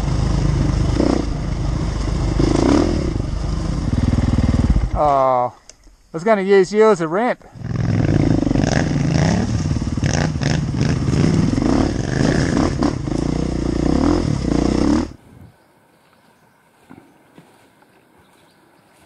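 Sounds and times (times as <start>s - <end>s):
motorcycle engine revving: 0.0s - 5.2s, 7.6s - 15.2s.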